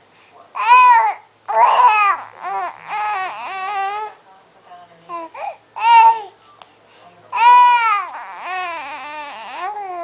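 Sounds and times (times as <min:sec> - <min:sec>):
baby babbling and squealing: 0:00.6 - 0:04.2, 0:07.4 - 0:10.0.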